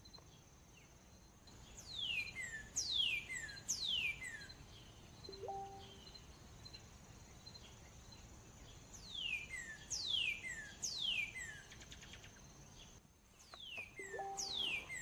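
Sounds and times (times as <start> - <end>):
descending whistled chirps: 13.7 - 15.0
faint high tone: 14.0 - 15.0.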